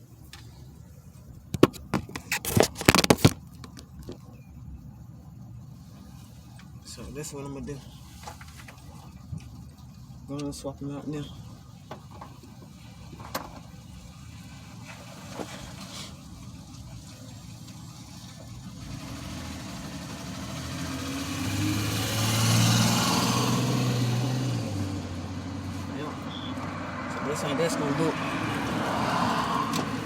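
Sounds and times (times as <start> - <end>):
car driving past: 18.5 - 30.0.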